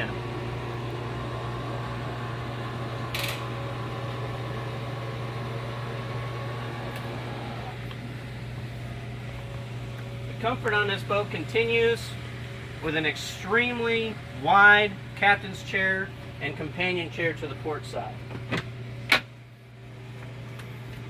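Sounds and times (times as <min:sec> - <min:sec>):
electric motor running: 0:00.0 - 0:07.8
low steady hum: 0:00.0 - 0:21.0.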